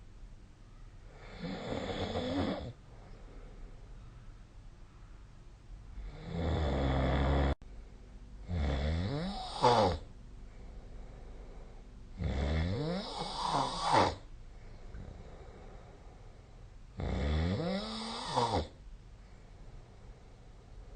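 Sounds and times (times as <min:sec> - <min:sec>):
person snoring: 0:01.1 - 0:02.8, 0:06.0 - 0:07.6, 0:08.4 - 0:10.1, 0:12.2 - 0:14.3, 0:17.0 - 0:18.8.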